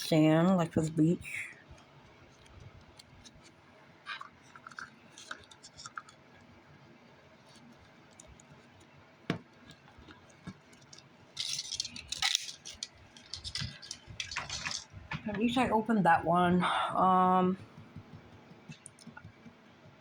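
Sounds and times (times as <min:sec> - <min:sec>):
small clicks and scratchy ticks: 0:01.7 - 0:09.0, 0:09.6 - 0:15.2, 0:17.8 - 0:20.0
plastic packaging crinkling: 0:09.8 - 0:15.2.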